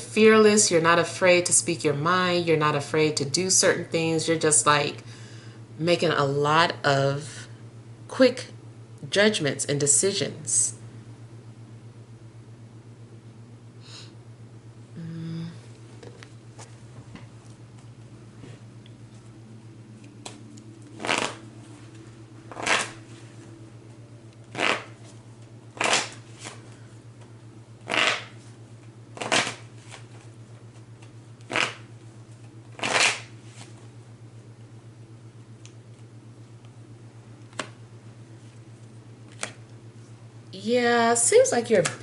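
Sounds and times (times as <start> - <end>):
steady low hum: 0.0 - 42.0
cards being shuffled: 20.0 - 23.4, 24.5 - 25.2, 25.8 - 26.7, 27.8 - 33.9, 39.2 - 39.6.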